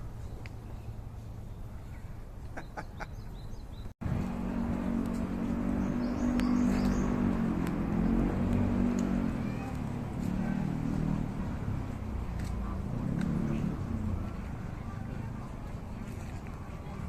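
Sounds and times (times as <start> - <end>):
small birds chirping: 0.0 - 12.7
low wind rumble: 0.0 - 16.0
low engine hum: 0.0 - 17.0.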